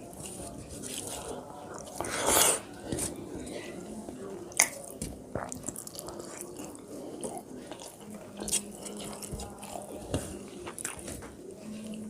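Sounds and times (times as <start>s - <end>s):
chewing and mouth clicks: 4.5s - 12.0s.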